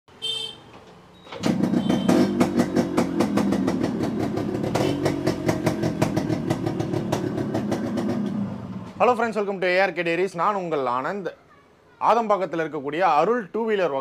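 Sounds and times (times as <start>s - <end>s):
two-stroke motorcycle engine: 1.3s - 9.0s.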